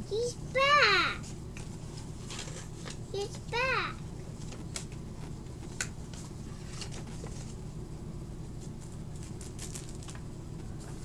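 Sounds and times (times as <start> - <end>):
low room hum: 0.0 - 11.0
objects clicking and rustling: 9.2 - 10.2.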